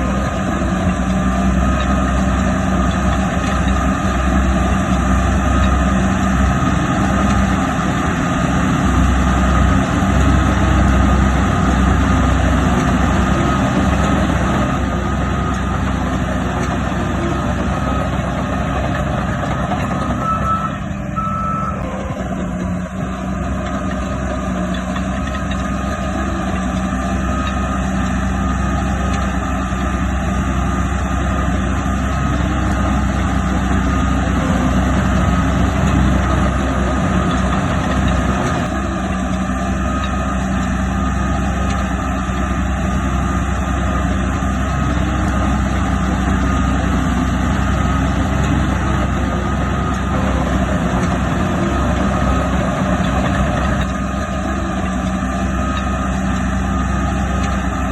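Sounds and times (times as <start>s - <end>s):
reversing alarm beeping: 0.0s - 23.0s, 44.6s - 57.8s
heavy diesel machinery running: 0.0s - 57.9s.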